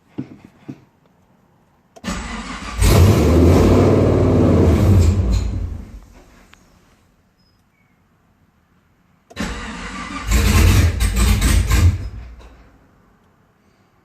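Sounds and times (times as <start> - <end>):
car engine firing and running: 2.0 - 6.0, 9.3 - 12.2
starter motor cranking: 9.3 - 12.1.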